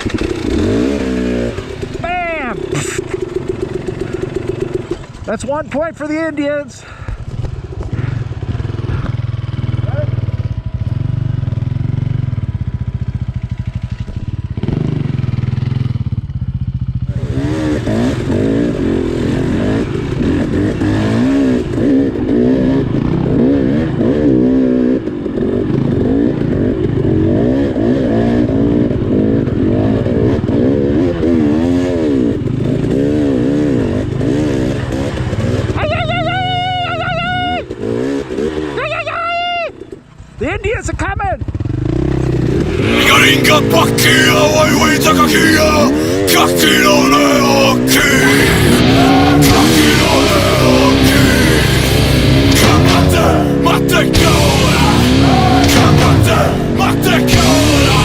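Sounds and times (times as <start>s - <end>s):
dirt bike engine running: 0.0s - 39.0s, 39.8s - 58.0s.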